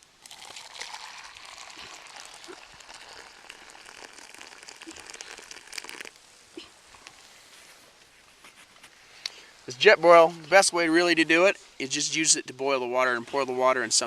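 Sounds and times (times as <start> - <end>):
hot water pouring into cup: 0.0 - 6.3.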